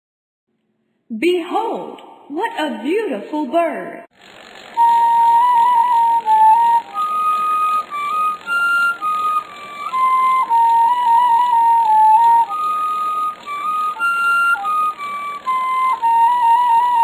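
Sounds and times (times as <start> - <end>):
solo flute melody: 4.8 - 17.0.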